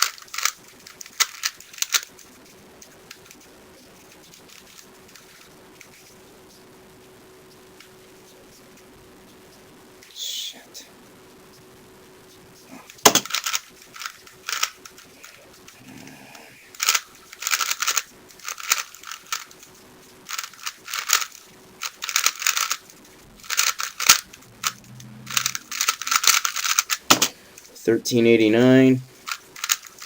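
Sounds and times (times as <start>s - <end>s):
plastic puzzle cube clicking: 0.0s - 2.1s, 13.0s - 15.4s, 16.8s - 19.6s, 20.3s - 22.8s, 23.4s - 27.3s, 29.2s - 30.0s.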